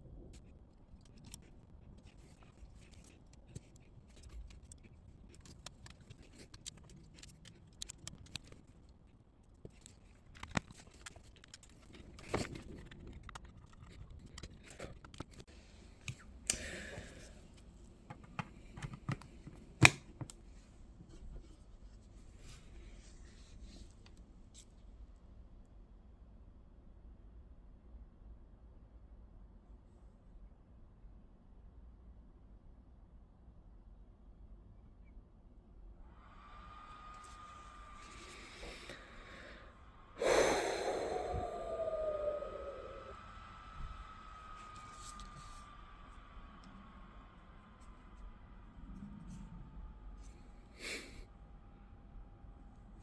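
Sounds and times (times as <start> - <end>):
light clicks and taps of small parts: 0.3 - 17.2.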